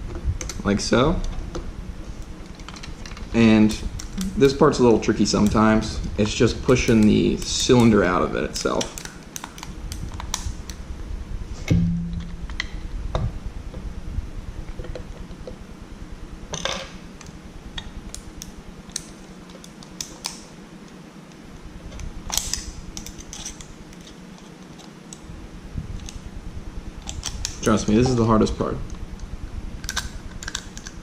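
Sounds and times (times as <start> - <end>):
metal knock: 11.7 - 12.4
small metal lock parts clicking: 22.0 - 24.9, 29.8 - 31.0.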